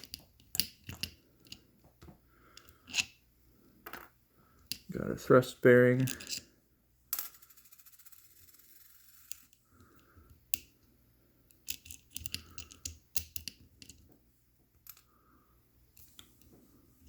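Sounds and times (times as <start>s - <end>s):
small parts clicking and scraping: 0.0s - 1.8s, 2.5s - 3.2s, 6.0s - 10.8s, 11.4s - 14.2s, 14.8s - 15.1s.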